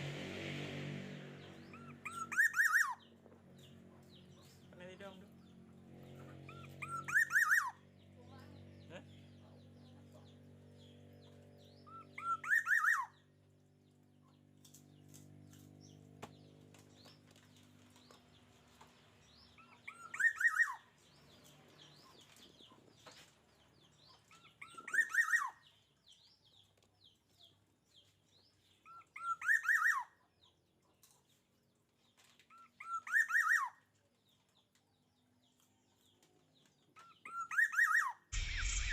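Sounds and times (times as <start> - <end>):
bird chirping: 1.4 - 30.6, 32.5 - 38.9
low steady hum: 38.4 - 38.9.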